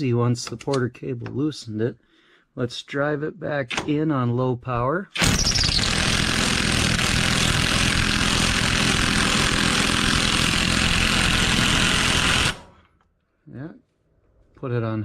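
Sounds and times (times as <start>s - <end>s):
cordless impact wrench hammering: 5.2s - 12.9s.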